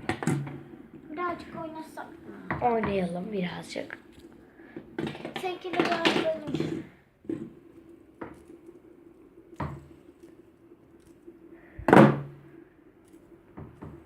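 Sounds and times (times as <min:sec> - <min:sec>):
faint steady hum: 0:00.0 - 0:14.0
fidget spinner knocks and taps: 0:02.5 - 0:03.3, 0:03.9 - 0:08.7, 0:09.4 - 0:11.2, 0:13.0 - 0:14.0.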